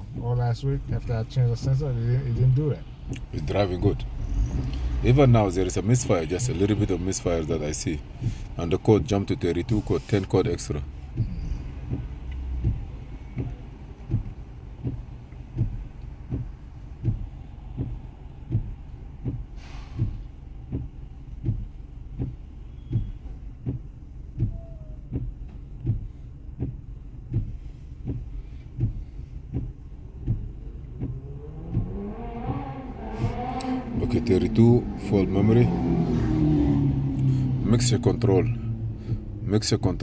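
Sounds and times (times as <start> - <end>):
car low thump: 0.0 - 40.0
steady low hum: 0.0 - 40.0.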